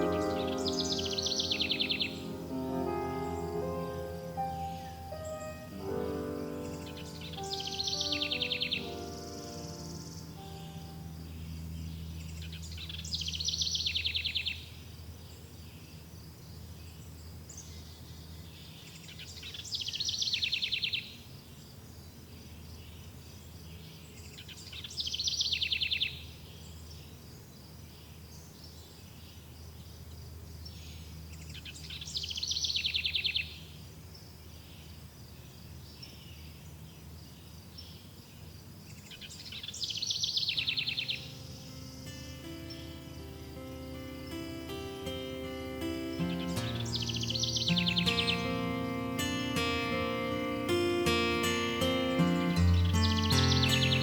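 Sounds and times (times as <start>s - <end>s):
insects chirring: 0.0s - 15.1s, 36.6s - 54.0s.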